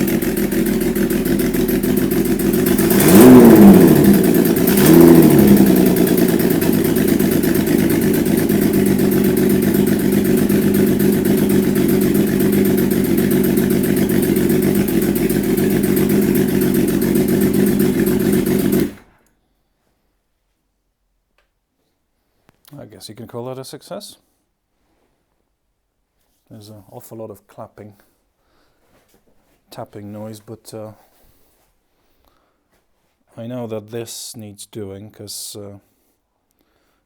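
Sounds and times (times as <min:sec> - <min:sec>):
engine tapping noise: 0:00.0 - 0:19.1
motorcycle engine revving and idling: 0:00.0 - 0:19.1.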